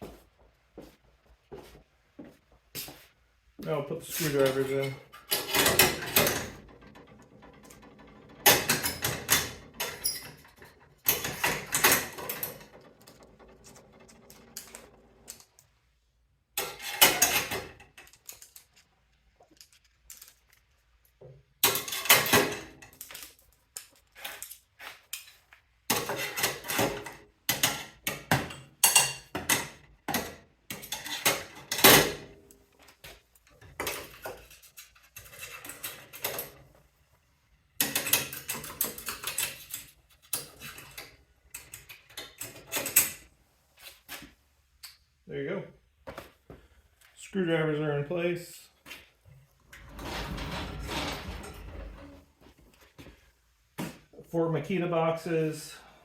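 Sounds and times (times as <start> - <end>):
screwdrivers clinking on metal rack: 4.3 - 15.6, 16.6 - 32.3, 37.8 - 43.3.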